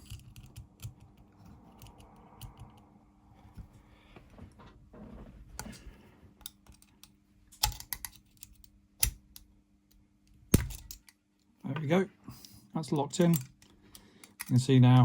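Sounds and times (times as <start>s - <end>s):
small metal clicks and scrapes: 0.0s - 2.9s, 6.4s - 9.2s, 12.4s - 15.0s.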